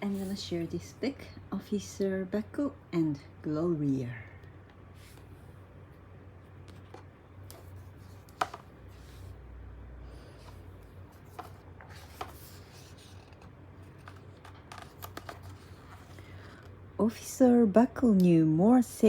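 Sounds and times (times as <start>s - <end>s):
faint low hum: 0.0s - 19.0s
paper rustling: 6.6s - 9.3s, 10.2s - 16.7s.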